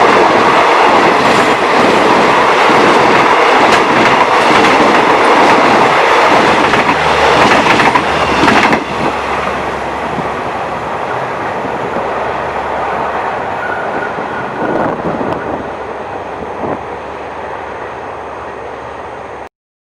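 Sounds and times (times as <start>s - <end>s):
train wheels clickety-clack: 0.0s - 9.5s.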